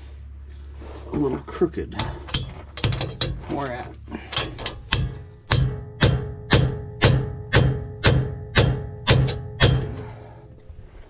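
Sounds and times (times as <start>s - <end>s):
hammer blows on metal: 4.3s - 10.4s.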